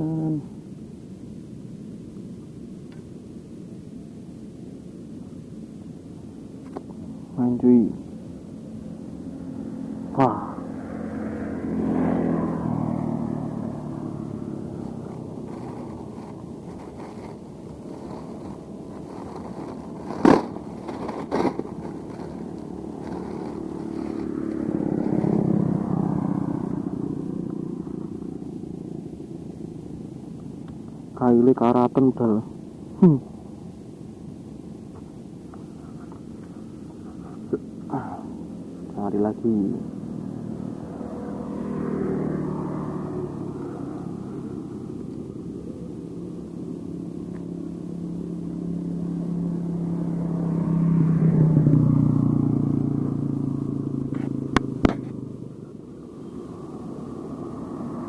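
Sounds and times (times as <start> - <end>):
motorcycle engine passing by: 9.3 - 29.2, 37.0 - 58.0.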